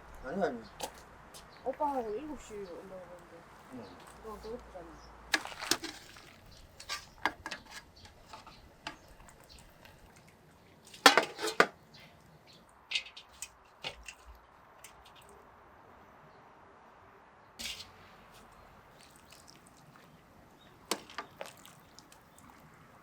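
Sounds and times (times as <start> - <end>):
dishes and cutlery clinking: 10.9 - 11.8.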